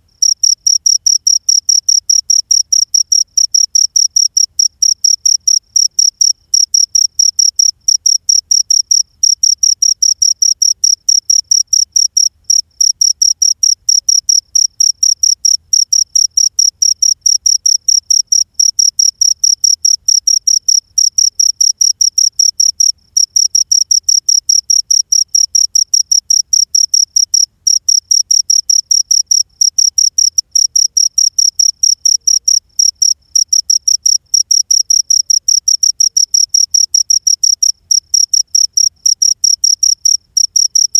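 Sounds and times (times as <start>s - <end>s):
cricket chirping: 0.0s - 40.9s.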